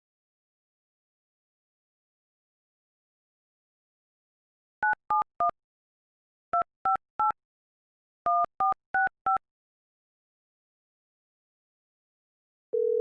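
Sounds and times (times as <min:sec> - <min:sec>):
telephone keypad dialing beeps: 0:04.8 - 0:05.6, 0:08.3 - 0:09.4, 0:12.8 - 0:13.0.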